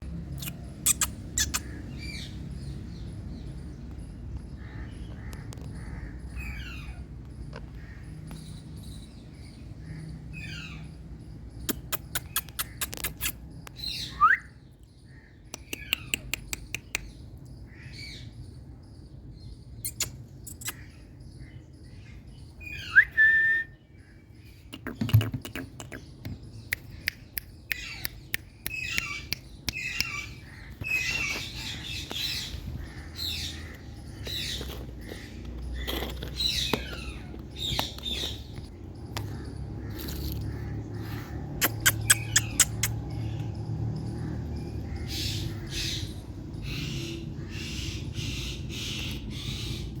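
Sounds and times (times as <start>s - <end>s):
parrot squawking and chirping: 0.4s - 2.3s, 27.8s - 38.6s, 39.8s - 43.1s.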